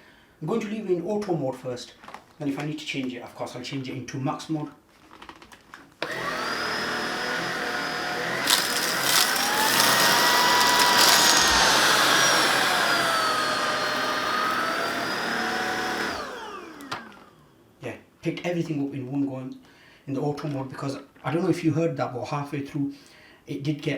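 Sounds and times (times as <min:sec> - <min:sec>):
stick vacuum motor whine: 0:06.0 - 0:17.5.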